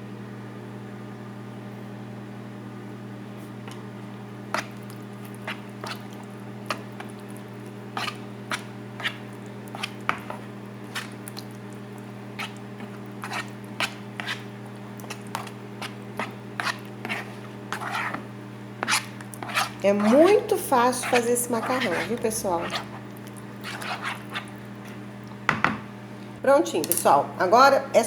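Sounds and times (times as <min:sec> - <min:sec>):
microwave oven humming: 0:00.0 - 0:28.0
spoon stirring thick sauce: 0:04.4 - 0:25.5.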